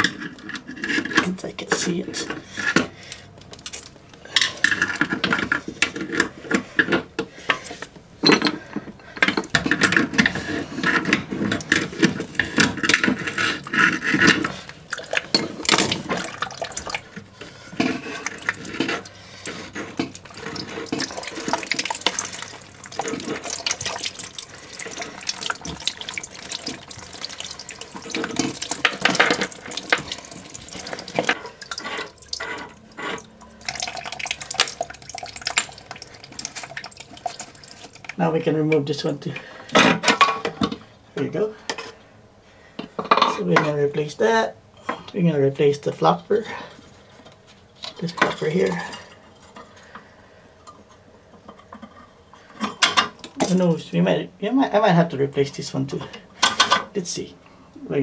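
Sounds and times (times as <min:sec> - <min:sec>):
plastic parts knocking and rattling: 0:00.0 - 0:38.2
water splashing and dripping: 0:14.9 - 0:17.2, 0:18.1 - 0:38.2.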